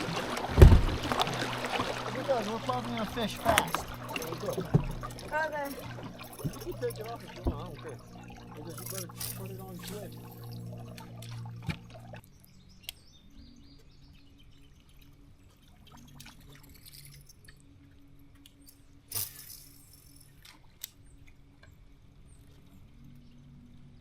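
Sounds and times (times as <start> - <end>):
faint motor hum: 0.0 - 16.6.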